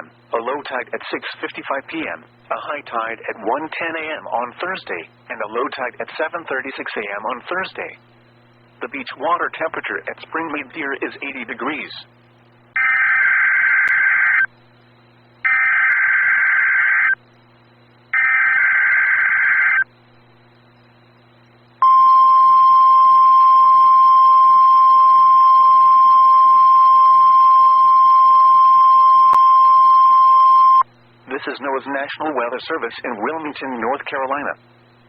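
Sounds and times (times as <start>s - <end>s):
steady warning alarm tone: 15.4s - 17.2s, 18.1s - 19.9s, 21.8s - 30.9s.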